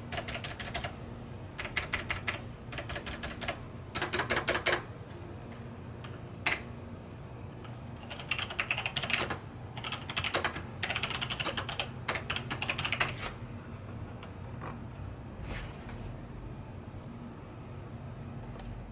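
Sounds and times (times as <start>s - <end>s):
mechanical keyboard typing: 0.1s - 0.9s, 1.6s - 4.9s, 6.0s - 6.7s, 8.0s - 13.2s.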